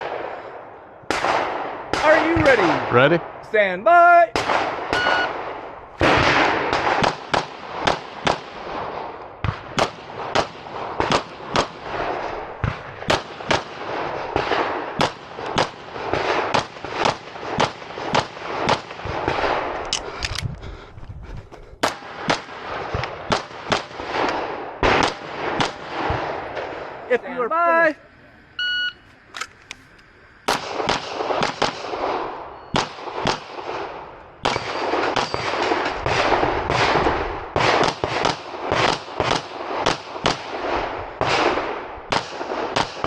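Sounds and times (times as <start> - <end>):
echoing pistol shots: 0.0 - 3.4, 4.3 - 19.9, 21.8 - 27.1, 30.5 - 43.0.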